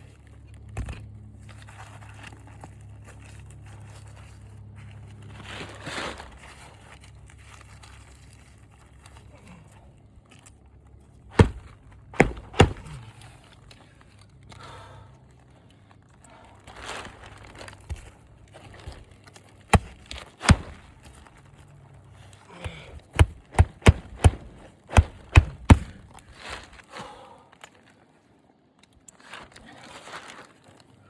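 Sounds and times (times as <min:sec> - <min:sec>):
rustling and crinkling: 0:00.0 - 0:26.9, 0:27.6 - 0:31.0
hammer knocks driving nails: 0:11.3 - 0:13.0, 0:19.7 - 0:20.9, 0:22.6 - 0:26.0.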